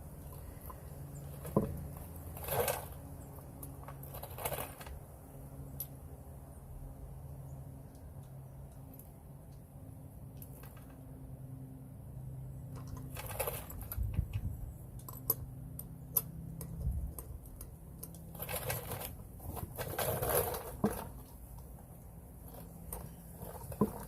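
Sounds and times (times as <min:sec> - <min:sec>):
scraping and rustling: 0:00.0 - 0:05.1, 0:12.8 - 0:14.7, 0:18.2 - 0:24.0
tools and parts clicking: 0:12.7 - 0:21.8.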